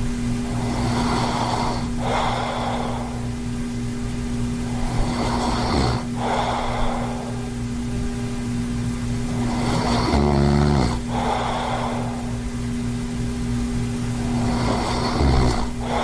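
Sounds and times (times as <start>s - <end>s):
steady low hum: 0.0s - 16.0s
man snoring: 0.4s - 3.5s, 4.6s - 7.6s, 9.2s - 12.5s, 14.1s - 16.0s.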